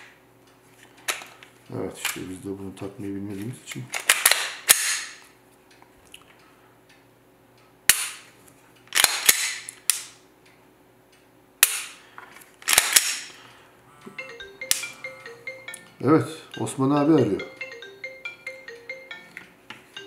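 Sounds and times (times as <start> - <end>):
pistol slide metallic clicks: 4.1 - 5.2, 11.6 - 12.0, 12.6 - 13.3
phone ringtone melody: 14.1 - 20.0.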